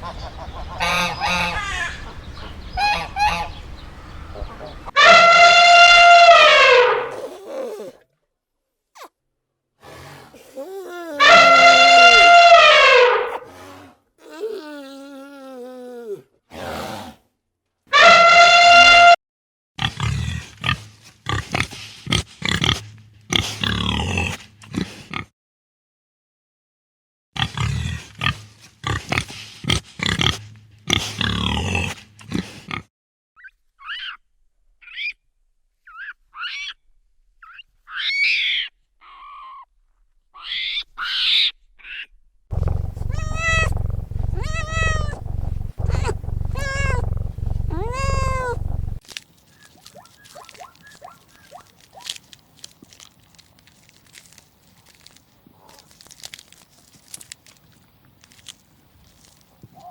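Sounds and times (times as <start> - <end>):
drawn-out rising and falling calls: 0.0 - 5.0, 42.5 - 49.0
harsh overlapping animal calls: 0.0 - 5.0, 42.5 - 49.0
faint rustling: 42.5 - 49.0
low hum: 42.5 - 49.0
short high animal calls: 42.5 - 49.0.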